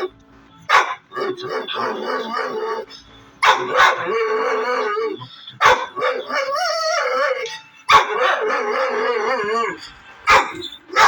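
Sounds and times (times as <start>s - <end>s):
dog barking: 0.7s - 2.8s, 3.4s - 11.0s
dog howling: 0.8s - 11.0s.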